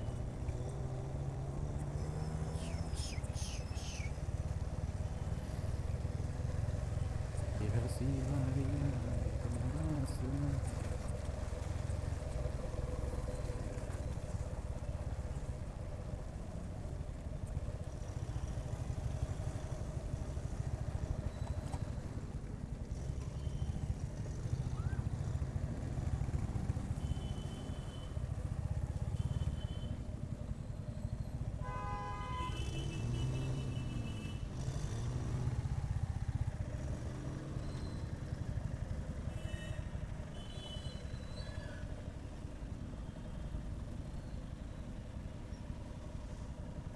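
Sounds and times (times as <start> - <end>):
road and traffic noise: 0.0 - 46.9
vehicle horn: 31.6 - 34.4.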